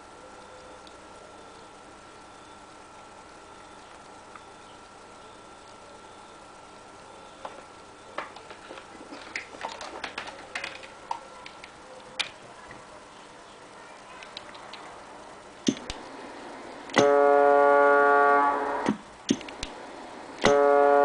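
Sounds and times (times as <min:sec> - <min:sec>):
ship horn beep: 0:16.9 - 0:18.9, 0:20.4 - 0:21.0.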